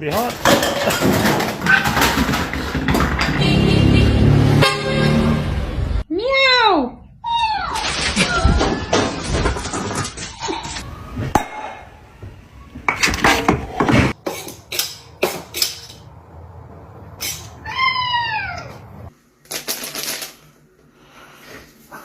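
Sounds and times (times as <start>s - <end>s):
cat meowing: 17.6s - 18.8s.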